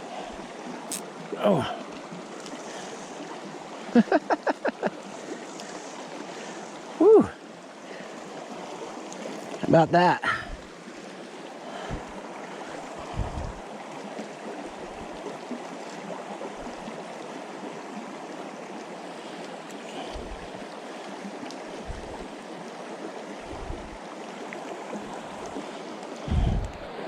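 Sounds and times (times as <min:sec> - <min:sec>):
creek flowing over rocks: 0:00.0 - 0:27.0
soft low thumps: 0:11.8 - 0:12.2, 0:13.0 - 0:13.6, 0:21.8 - 0:22.2, 0:23.5 - 0:24.0, 0:26.3 - 0:26.9.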